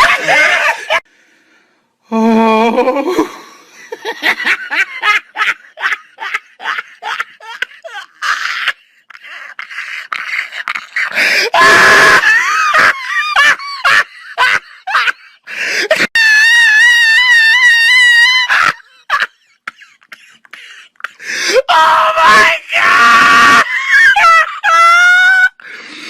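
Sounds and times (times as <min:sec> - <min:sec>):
people laughing hysterically: 0:00.0 - 0:01.1, 0:02.7 - 0:19.7, 0:21.8 - 0:25.6.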